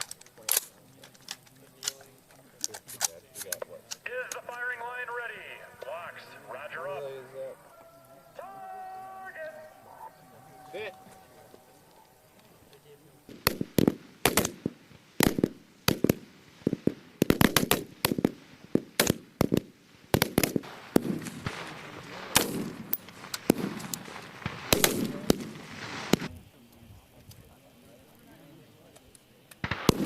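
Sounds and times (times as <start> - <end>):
rifle shots with echo: 13.3 - 26.3, 29.6 - 30.0.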